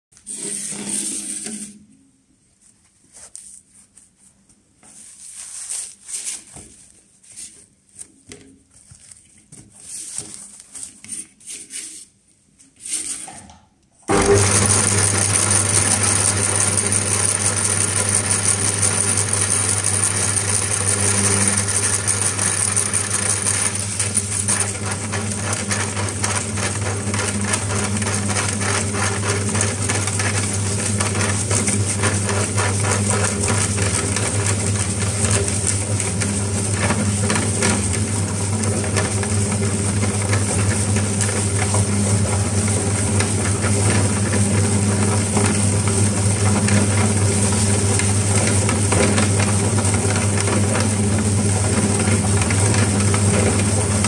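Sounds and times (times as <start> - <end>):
meat grinder motor hum: 14.1 - 54.0
crackling of sponge in grinder: 14.2 - 54.0.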